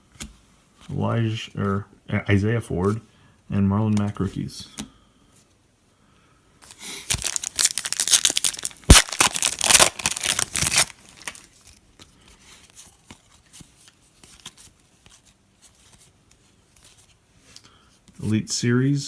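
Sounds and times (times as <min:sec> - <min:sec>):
cards rustling: 0:06.6 - 0:17.7
wrapper snapping: 0:07.0 - 0:11.5
wrapper tearing and crinkling: 0:07.0 - 0:11.6.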